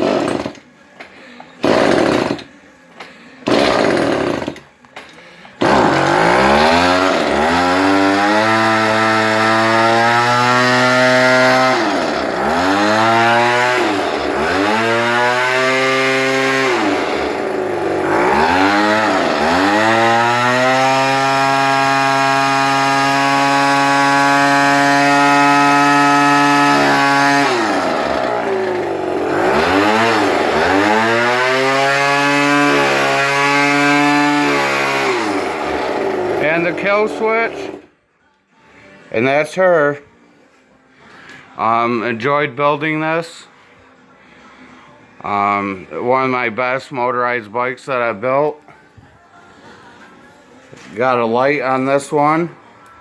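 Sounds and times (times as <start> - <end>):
two-stroke engine starting and revving: 0.0 - 0.6, 1.6 - 2.5, 3.4 - 4.6, 5.6 - 37.9.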